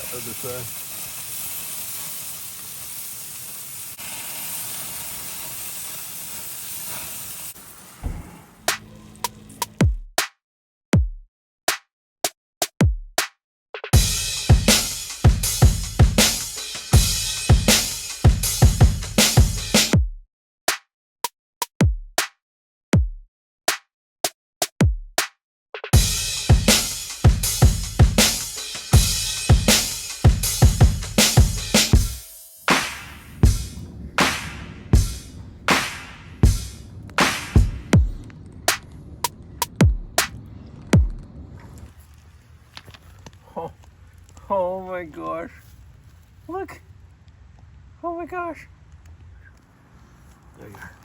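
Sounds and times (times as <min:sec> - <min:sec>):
steak sizzling on grill: 0:00.0 - 0:09.8
drum machine beat music: 0:09.8 - 0:10.2, 0:11.0 - 0:11.2, 0:12.8 - 0:13.2, 0:13.8 - 0:20.2, 0:21.8 - 0:22.2, 0:23.0 - 0:23.2, 0:24.8 - 0:25.2, 0:25.8 - 0:38.3, 0:39.7 - 0:40.3, 0:41.0 - 0:41.2
deep falling kick drums: 0:33.4 - 0:40.3, 0:40.9 - 0:41.4.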